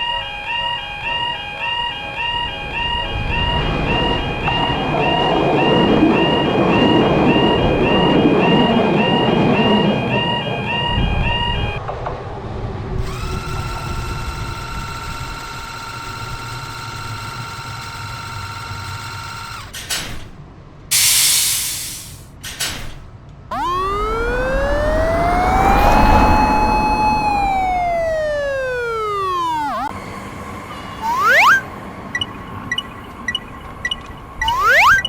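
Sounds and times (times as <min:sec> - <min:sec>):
motor whine rising and falling: 0:13.1 - 0:14.7, 0:23.5 - 0:30.0, 0:31.0 - 0:31.7, 0:34.4 - 0:35.0
short hiss: 0:20.9 - 0:22.3
electric motor hum: 0:23.5 - 0:29.9.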